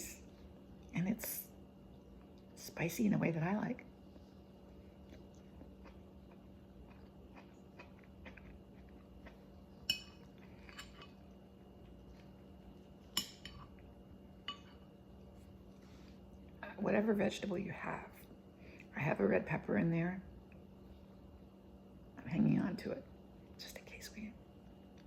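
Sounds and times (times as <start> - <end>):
chewing: 4.1 - 13.9
cutlery clinking against dish: 9.8 - 11.2, 13.1 - 13.7, 14.4 - 14.8.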